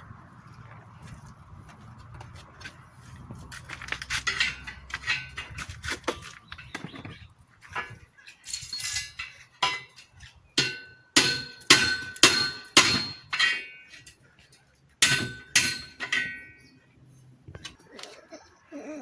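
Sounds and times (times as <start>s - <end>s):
hammer striking metal: 10.6s - 13.9s, 15.0s - 16.7s.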